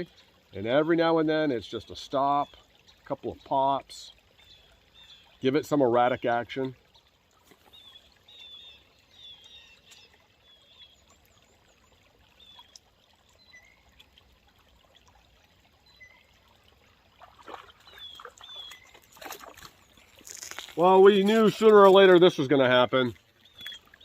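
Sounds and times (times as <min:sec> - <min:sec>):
river trickling: 0:00.0 - 0:24.0
small birds chirping: 0:01.8 - 0:05.5, 0:06.2 - 0:14.1, 0:17.8 - 0:24.0.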